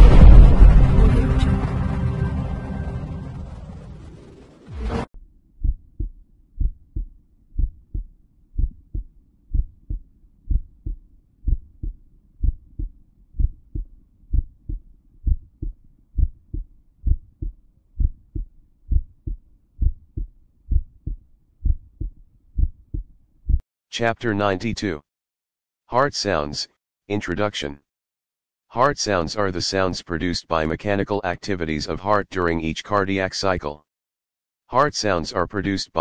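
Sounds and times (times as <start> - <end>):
heartbeat thumps: 5.6 - 23.6.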